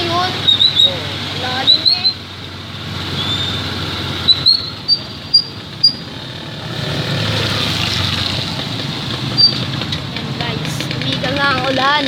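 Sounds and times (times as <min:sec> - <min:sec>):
outdoor background rumble: 0:00.0 - 0:12.0
passing vehicle: 0:00.0 - 0:12.0
high-pitched chirps: 0:00.4 - 0:01.0, 0:01.6 - 0:02.2, 0:03.2 - 0:06.2.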